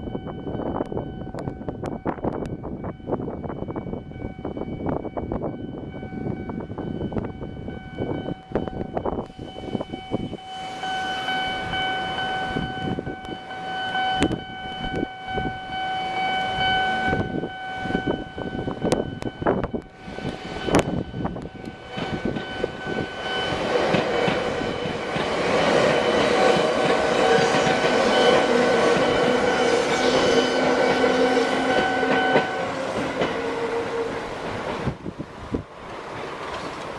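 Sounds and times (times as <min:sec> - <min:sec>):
level crossing bell ringing: 0:05.7 - 0:19.8.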